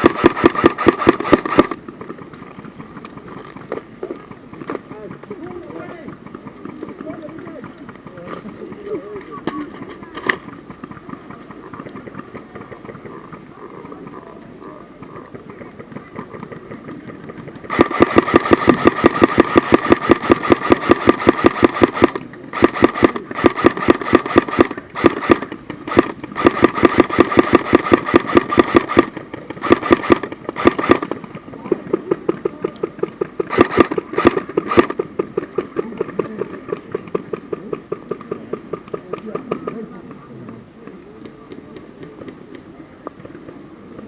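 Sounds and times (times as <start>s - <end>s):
airsoft gun firing bursts: 0.0s - 2.7s, 17.6s - 39.9s.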